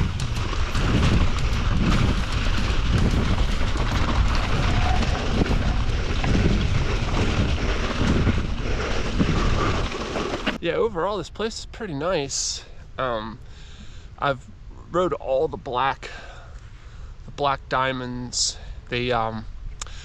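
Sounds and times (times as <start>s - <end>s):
wind buffeting microphone: 0.0s - 12.4s.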